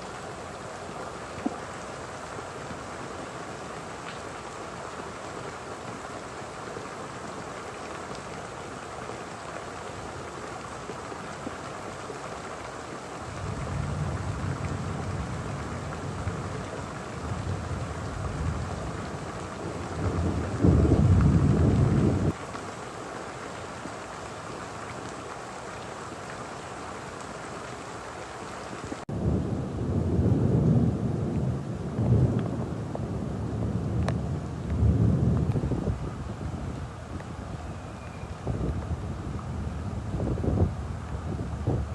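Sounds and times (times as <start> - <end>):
heavy rain pouring: 0.0 - 41.9
low thunder rumble: 13.3 - 22.4, 29.1 - 41.9.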